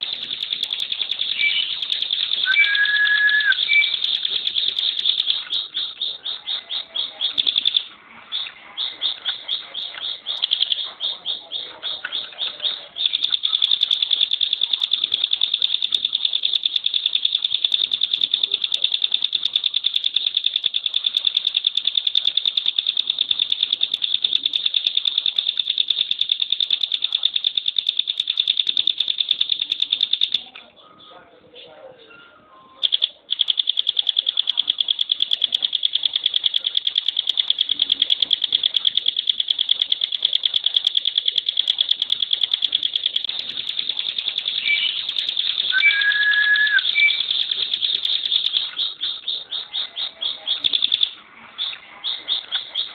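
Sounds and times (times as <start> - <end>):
bird rattling trill: 0.0 - 7.9, 8.8 - 11.2, 12.2 - 30.5, 32.8 - 51.2
low whistled bird note: 2.4 - 4.1, 45.7 - 47.2.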